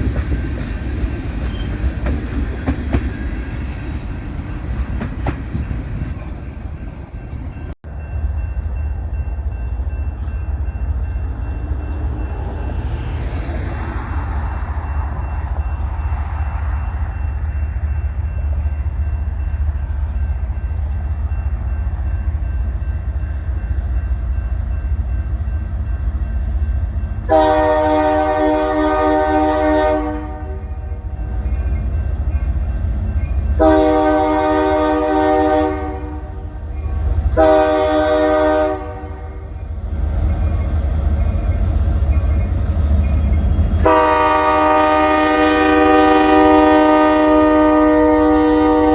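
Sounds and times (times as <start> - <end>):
train rumbling: 0.0 - 48.9
locomotive air horn blasts: 27.3 - 30.7, 33.5 - 36.4, 37.3 - 39.5, 43.8 - 48.9.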